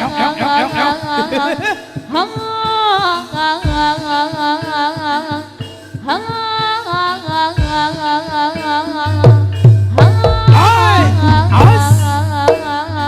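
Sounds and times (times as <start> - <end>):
drum strokes: 0.0 - 13.0
wavering lead melody: 10.3 - 13.0.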